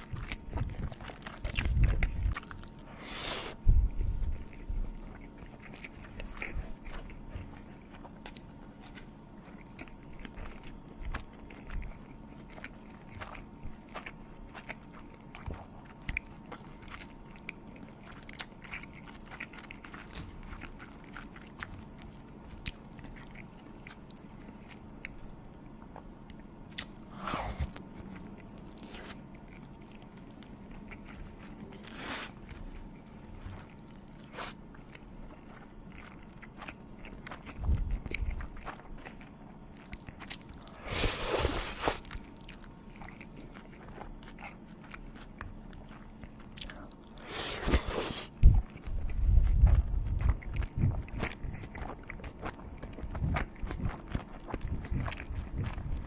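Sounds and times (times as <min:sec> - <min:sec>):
person biting and chewing food: 0:00.0 - 0:56.0.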